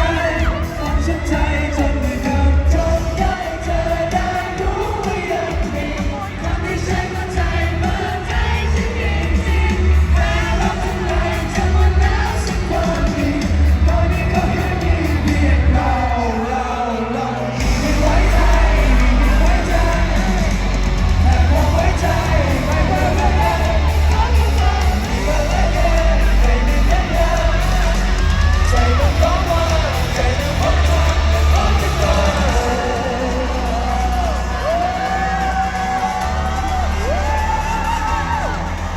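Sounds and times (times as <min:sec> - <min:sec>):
live pop music with heavy bass: 0:00.0 - 0:38.9
person singing: 0:00.0 - 0:38.9
audience shouting: 0:02.9 - 0:38.9.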